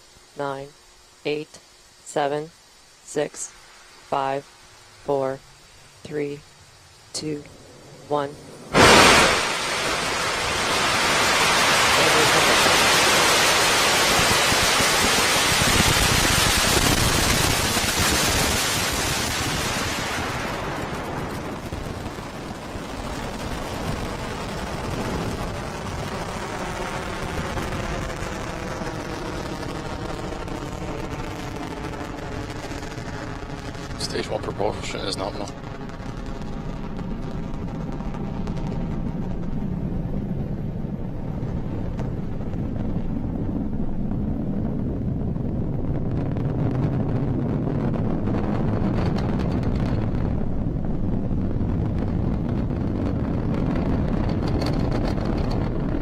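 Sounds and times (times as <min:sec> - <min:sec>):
rocket engines roaring: 0:06.0 - 0:56.0.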